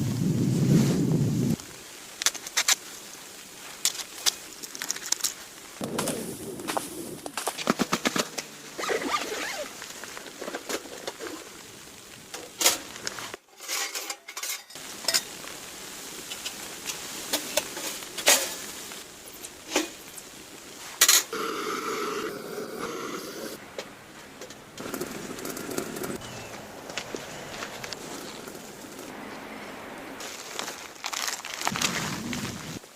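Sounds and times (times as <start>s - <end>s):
utensils clinking against cookware: 13.5s - 15.3s.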